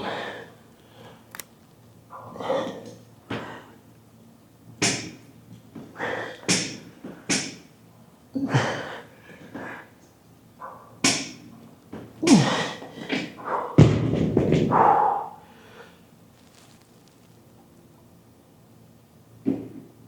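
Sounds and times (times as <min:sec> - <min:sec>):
man breathing forcefully: 0:12.2 - 0:13.7.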